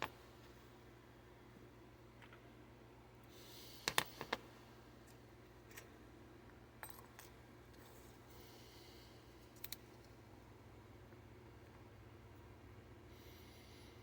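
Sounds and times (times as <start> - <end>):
battery cells clicking on workbench: 3.8 - 4.4.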